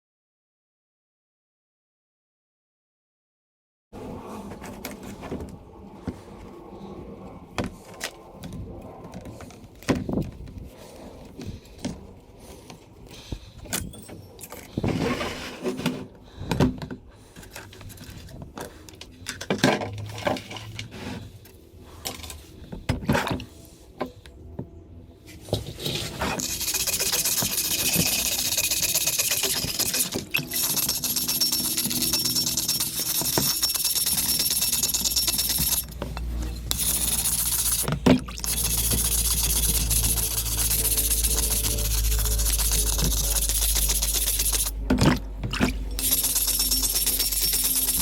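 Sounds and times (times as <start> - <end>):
metal clinking and scraping: 25.7 - 48.0.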